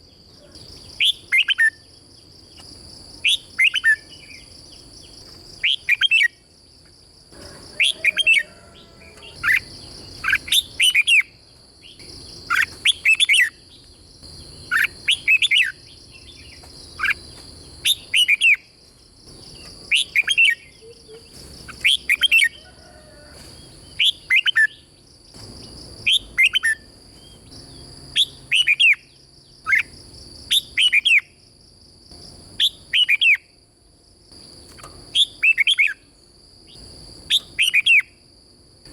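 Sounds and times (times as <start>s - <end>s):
bulbul singing whistled phrases: 0.8s - 1.9s, 3.2s - 4.8s, 5.6s - 6.4s, 7.8s - 13.8s, 14.4s - 17.2s, 17.8s - 18.7s, 19.5s - 22.6s, 23.9s - 24.8s, 26.1s - 29.9s, 30.5s - 31.3s, 32.6s - 33.5s, 35.1s - 36.0s, 37.3s - 38.2s.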